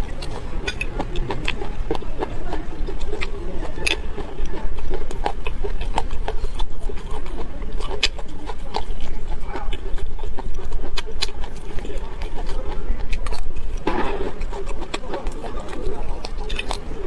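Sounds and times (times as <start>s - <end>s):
mouth clicks and smacks: 0.0s - 17.0s
person chewing food: 0.0s - 17.0s
steady low hum: 0.0s - 17.0s.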